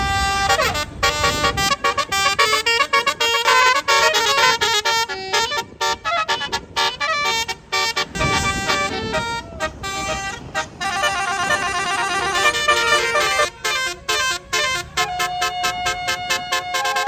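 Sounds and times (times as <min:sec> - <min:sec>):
bus horn playing a fast tune: 0:00.0 - 0:17.0.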